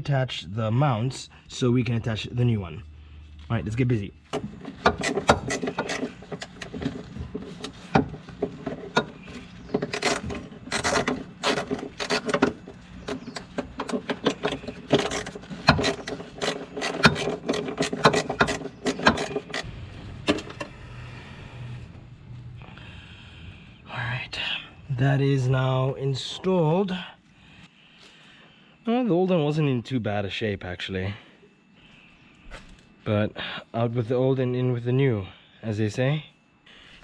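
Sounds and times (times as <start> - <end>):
tools and car parts clicking and knocking: 4.3 - 20.7.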